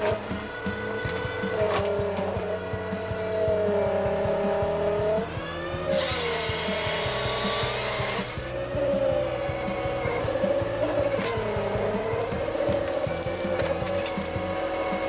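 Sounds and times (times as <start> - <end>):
background music with steady beat: 0.0 - 15.0
harvester saw cutting log: 5.8 - 15.0.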